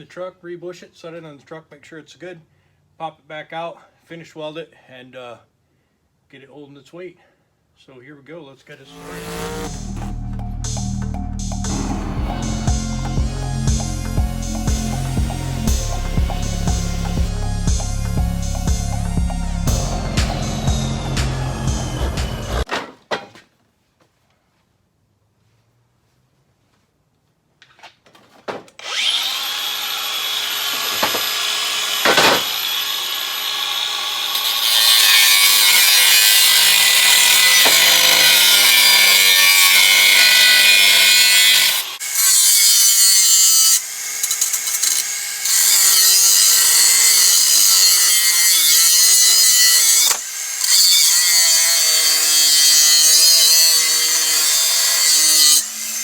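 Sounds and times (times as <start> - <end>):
high whine of power tool: 8.9 - 11.0, 11.6 - 22.7, 28.8 - 56.0
power tool cutting metal: 8.9 - 22.7, 28.8 - 56.0.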